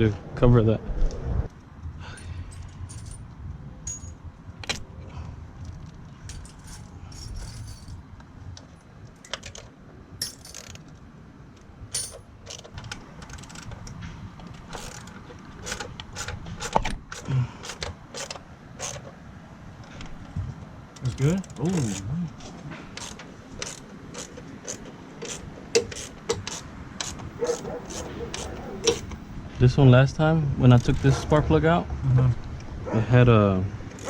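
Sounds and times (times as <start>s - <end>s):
hand tools clinking: 2.1s - 4.2s, 6.2s - 8.0s, 9.2s - 10.9s, 11.9s - 19.2s, 21.0s - 29.3s.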